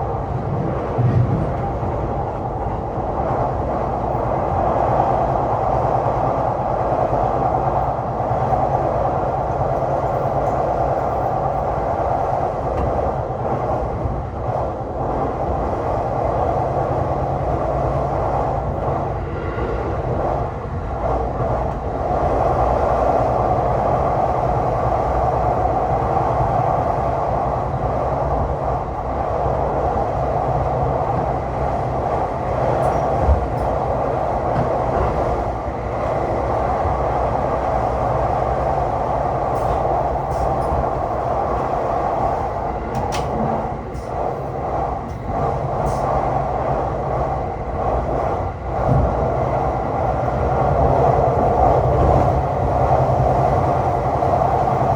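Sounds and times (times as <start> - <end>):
train wheels rumbling on rail: 0.0 - 54.9.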